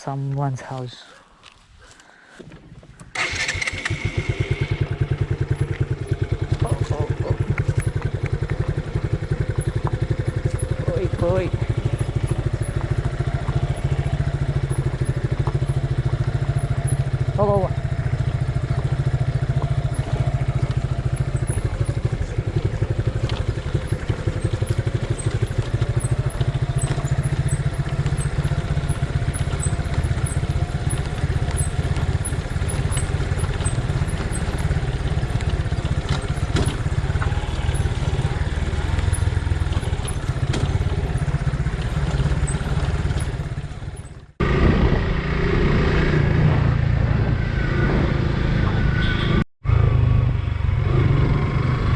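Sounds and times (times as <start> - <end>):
motorcycle engine running: 2.9 - 51.9.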